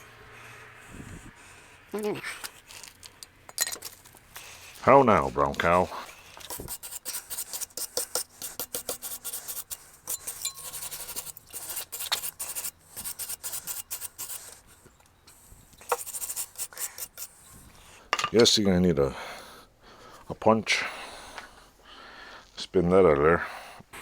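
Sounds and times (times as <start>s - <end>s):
hand tools scraping on metal: 2.0s - 17.7s.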